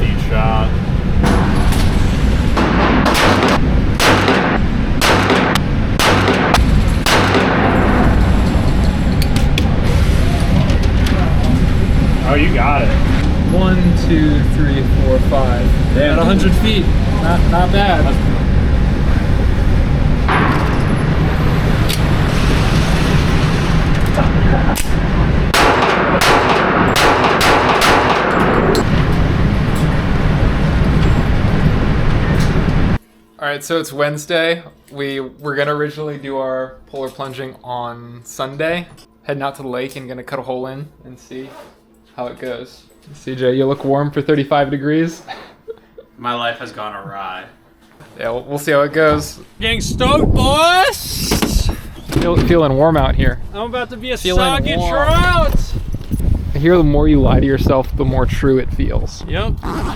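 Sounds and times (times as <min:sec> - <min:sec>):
steady low rumble: 0:00.0 - 0:33.0, 0:49.3 - 0:59.6
gunshots with ringing tail: 0:01.2 - 0:08.6, 0:20.3 - 0:22.3, 0:24.7 - 0:29.1.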